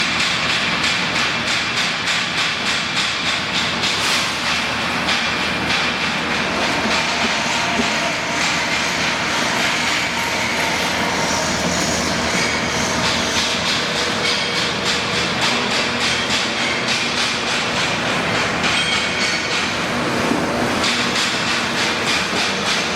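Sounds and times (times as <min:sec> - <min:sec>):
rhythmic mechanical clatter: 0:00.0 - 0:22.9
milling machine running: 0:03.4 - 0:16.5.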